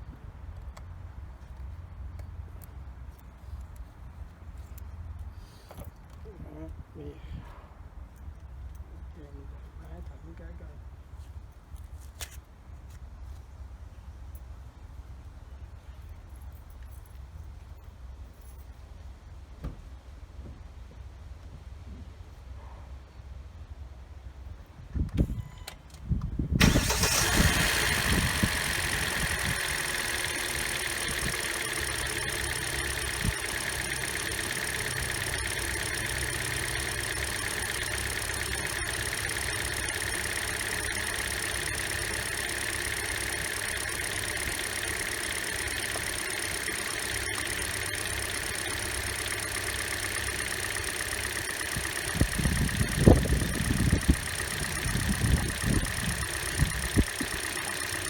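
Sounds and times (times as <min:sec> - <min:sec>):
car engine starting and idling: 0:26.6 - 0:58.0.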